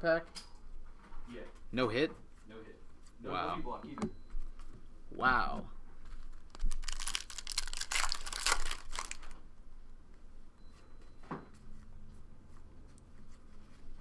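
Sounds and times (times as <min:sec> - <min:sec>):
wrapper tearing and crinkling: 0:06.2 - 0:09.4.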